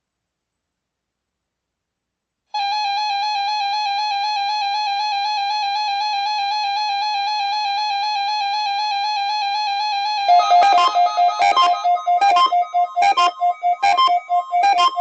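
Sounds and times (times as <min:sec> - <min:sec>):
loud electronic alarm tone: 0:10.2 - 0:15.0.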